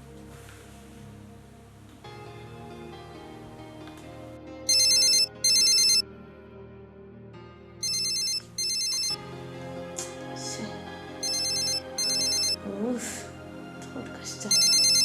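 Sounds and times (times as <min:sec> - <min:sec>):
soft background music: 0:00.0 - 0:15.0
mobile phone ringtone: 0:04.7 - 0:06.0, 0:07.8 - 0:09.2, 0:11.2 - 0:12.6, 0:14.5 - 0:15.0.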